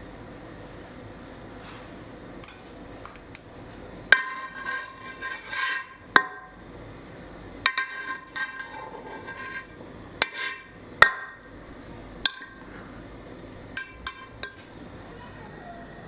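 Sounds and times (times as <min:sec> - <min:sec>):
cookware clinking: 0:12.2 - 0:12.6, 0:13.7 - 0:14.7.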